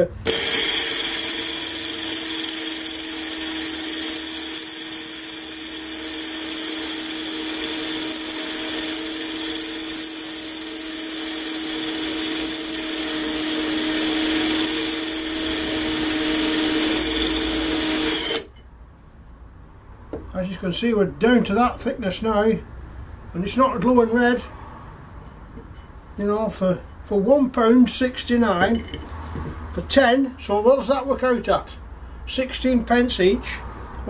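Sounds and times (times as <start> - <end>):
electric drill motor whine: 0.2 - 18.5
drill bit grinding into glass: 0.3 - 18.5.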